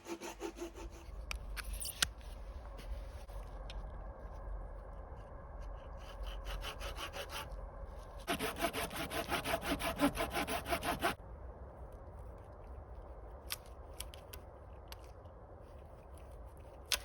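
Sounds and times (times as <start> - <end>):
hand saw cutting wood: 0.0 - 1.0, 8.3 - 11.2.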